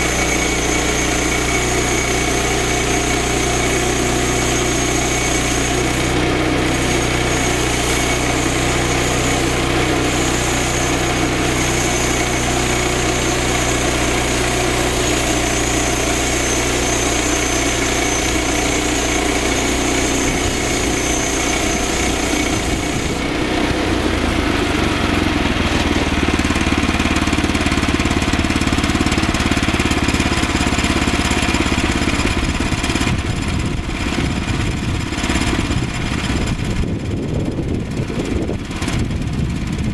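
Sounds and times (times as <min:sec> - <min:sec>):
thin high whine: 0:00.0 - 0:26.8
small gasoline engine running: 0:00.0 - 0:39.9.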